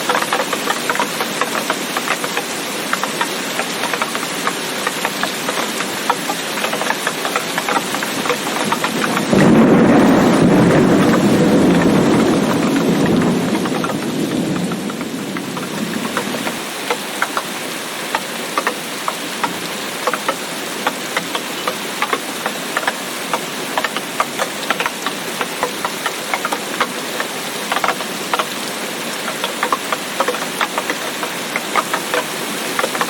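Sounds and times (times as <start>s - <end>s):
heavy rain: 0.0s - 33.0s
raindrops ticking: 0.0s - 33.0s
thunder rumble: 8.6s - 16.6s.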